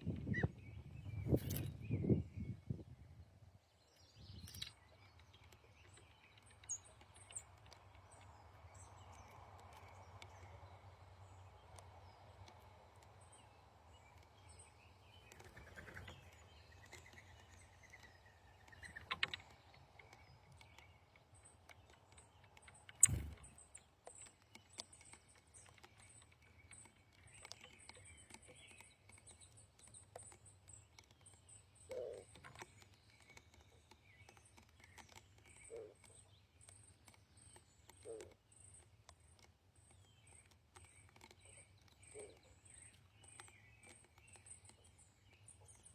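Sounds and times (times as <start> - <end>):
high thin bird chirps: 0.3 - 2.5, 4.2 - 4.8, 22.8 - 23.7.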